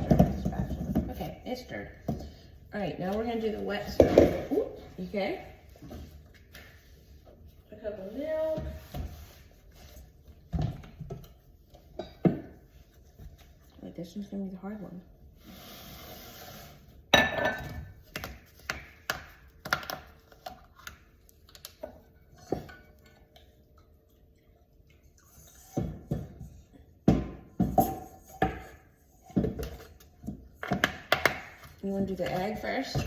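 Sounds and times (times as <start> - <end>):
dishes and utensils clattering: 17.2 - 18.0.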